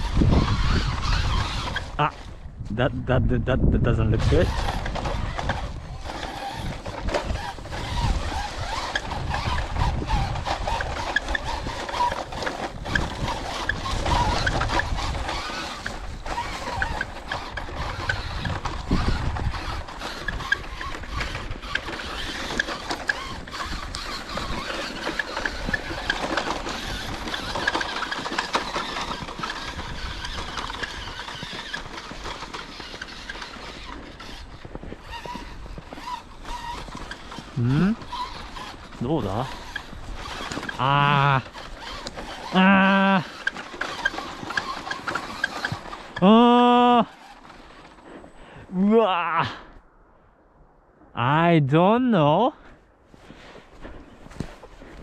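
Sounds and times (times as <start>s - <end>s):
toy truck motor whirring: 0.0s - 2.5s, 3.6s - 49.7s.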